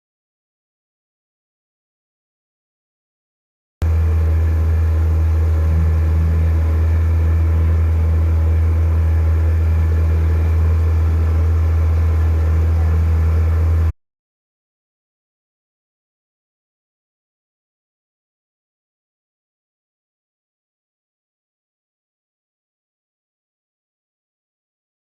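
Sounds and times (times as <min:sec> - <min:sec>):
boat engine running: 0:03.8 - 0:13.9.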